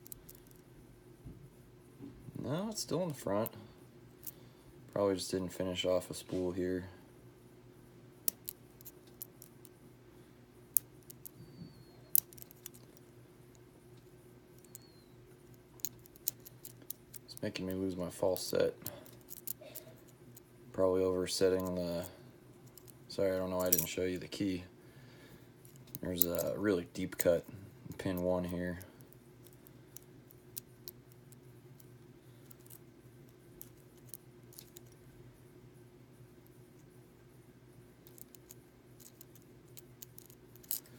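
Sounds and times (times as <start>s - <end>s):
small metallic clicks and ticks: 0.0s - 0.7s, 10.7s - 20.5s, 21.4s - 24.0s, 25.6s - 35.0s, 38.0s - 40.9s
faint steady hum: 0.0s - 40.9s
lock pins clicking: 23.6s - 24.0s, 38.0s - 40.9s.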